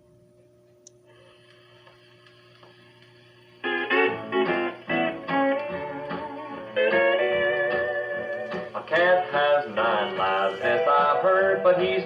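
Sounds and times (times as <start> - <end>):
country music with steel guitar: 3.6 - 12.0.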